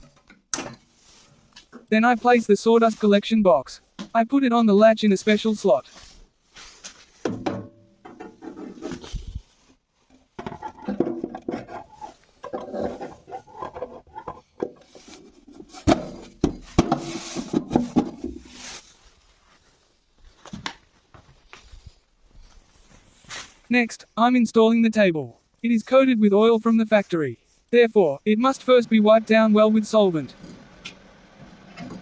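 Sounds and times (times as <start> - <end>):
parts knocking and clattering: 7.2 - 9.0, 10.0 - 18.6, 31.7 - 32.0
rubbing and scraping: 8.1 - 19.7.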